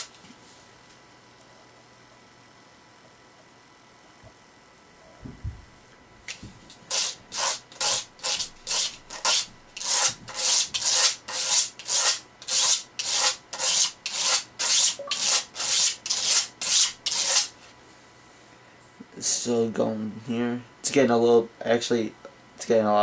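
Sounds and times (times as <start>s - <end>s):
knife scraping on sharpening stone: 6.9s - 17.5s.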